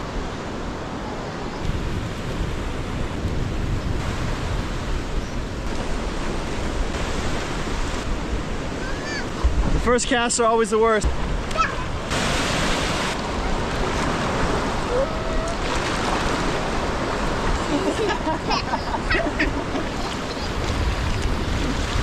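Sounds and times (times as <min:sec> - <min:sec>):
wind buffeting microphone: 0:00.0 - 0:09.9, 0:11.0 - 0:22.0
ocean surf washing onto beach: 0:00.0 - 0:22.0.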